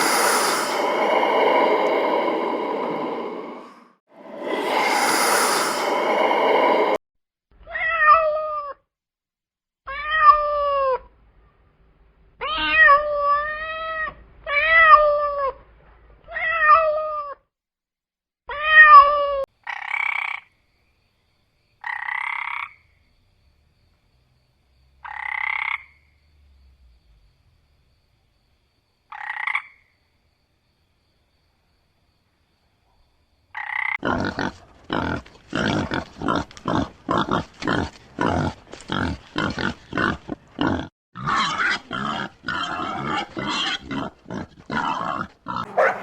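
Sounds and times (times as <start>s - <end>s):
short rasping calls: 45.7s - 46.0s.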